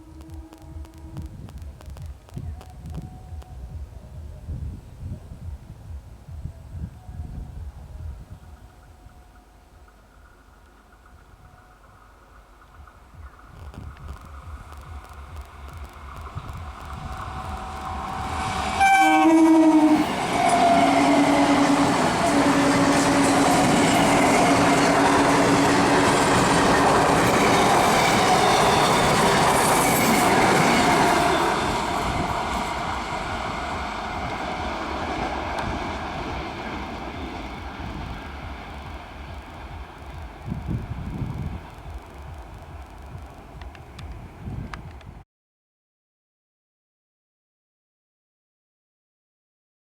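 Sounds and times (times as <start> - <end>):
train horn blasts: 0.0 - 4.3, 14.4 - 42.5
train wheels clattering: 12.6 - 18.9, 19.9 - 44.2.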